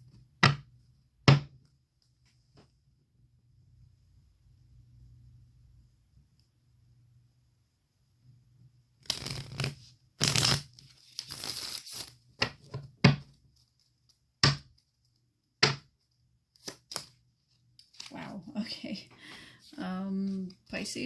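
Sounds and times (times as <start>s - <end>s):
cards rustling and sliding: 9.0s - 12.8s, 16.5s - 18.2s.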